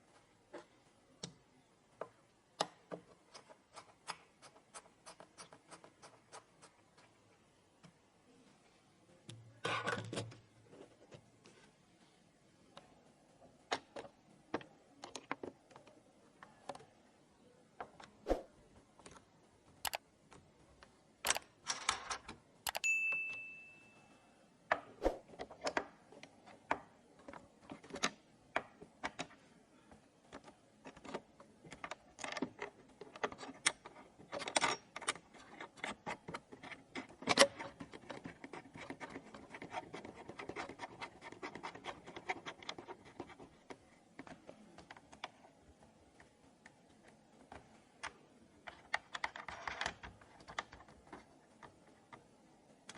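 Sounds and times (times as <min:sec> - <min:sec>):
hardware parts clicking and tapping: 0:19.0 - 0:23.4, 0:30.3 - 0:45.4
metallic ring: 0:22.7 - 0:24.2.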